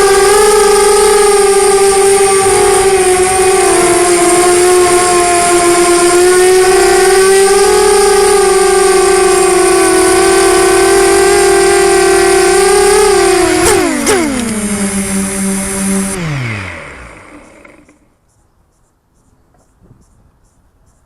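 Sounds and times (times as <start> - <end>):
drone propellers whining: 0.0 - 18.2.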